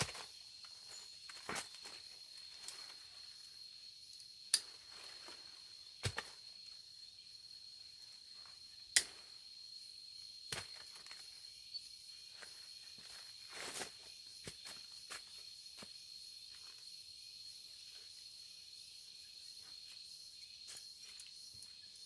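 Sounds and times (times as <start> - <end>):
high insect drone: 0.0 - 22.0
sharp snaps of pods cut: 8.9 - 9.2.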